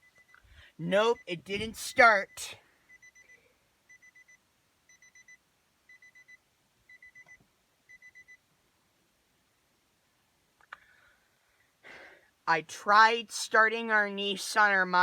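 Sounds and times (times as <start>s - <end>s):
faint high warning beeps: 0.0s - 8.5s.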